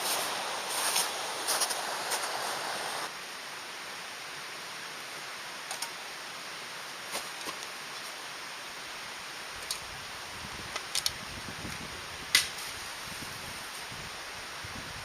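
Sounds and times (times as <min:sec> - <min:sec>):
mountain stream rushing: 0:00.0 - 0:10.7.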